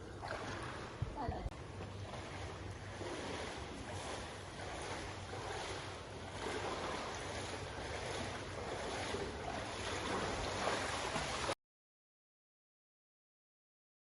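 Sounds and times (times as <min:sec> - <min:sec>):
water rushing: 0:00.0 - 0:11.6.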